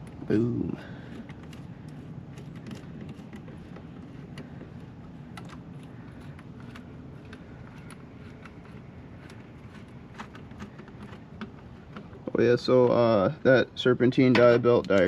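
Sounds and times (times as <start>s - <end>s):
low background hum: 0.0s - 15.0s
hand tools clicking and tapping: 1.1s - 12.2s.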